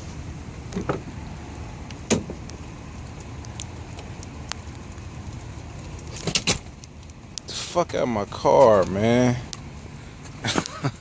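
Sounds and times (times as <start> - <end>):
car engine idling: 0.0 - 11.0
faint ticks: 1.9 - 6.0.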